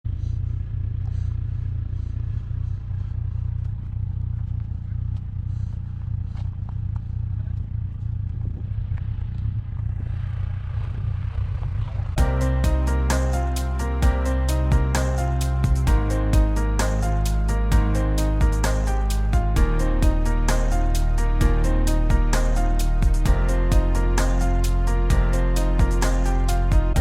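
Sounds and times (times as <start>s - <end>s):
music: 12.2s - 27.0s.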